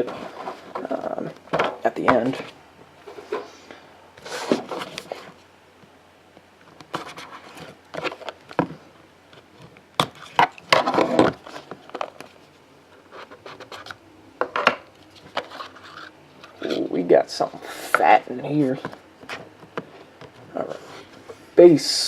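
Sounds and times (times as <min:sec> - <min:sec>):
packaging scratching and rubbing: 0:04.2 - 0:05.4, 0:06.9 - 0:08.4, 0:09.4 - 0:14.0, 0:15.1 - 0:16.9.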